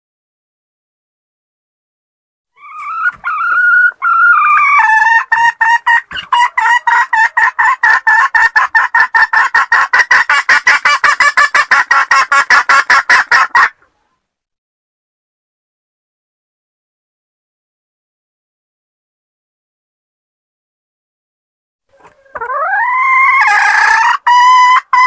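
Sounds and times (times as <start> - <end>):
hen calling and clucking: 2.6 - 14.2, 21.9 - 25.0.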